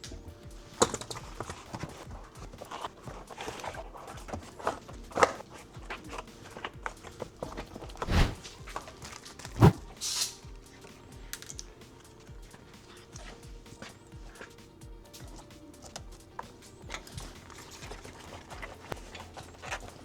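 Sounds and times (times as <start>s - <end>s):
background music: 0.0s - 20.0s
short hiss: 8.0s - 8.5s.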